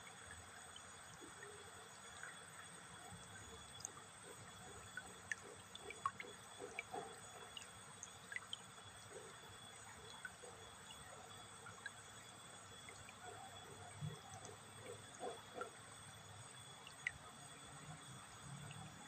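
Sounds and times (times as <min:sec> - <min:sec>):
low steady hiss: 0:00.0 - 0:19.0
soft drip-like clicks: 0:00.0 - 0:19.0.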